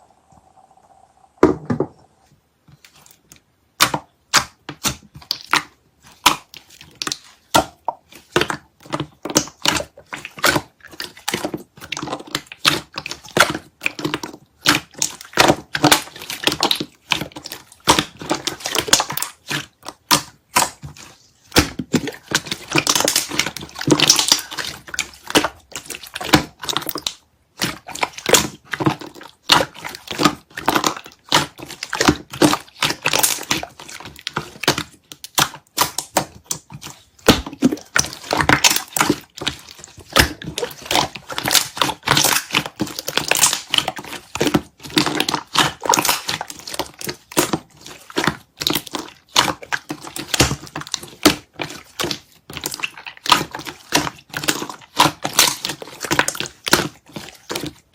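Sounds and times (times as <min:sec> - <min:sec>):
slime squished by hand: 0:02.7 - 0:57.9.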